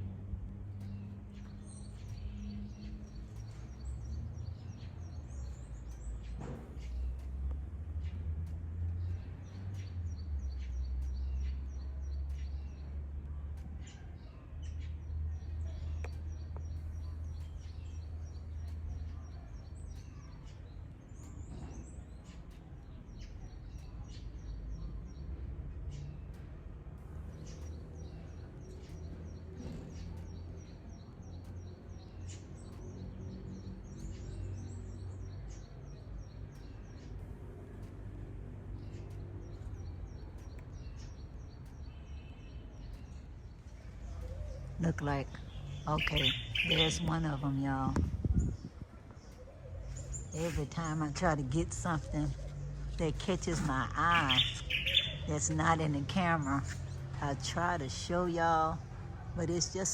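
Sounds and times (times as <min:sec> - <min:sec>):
small birds chirping: 0:00.0 - 0:59.9
low rumble: 0:43.0 - 0:58.2.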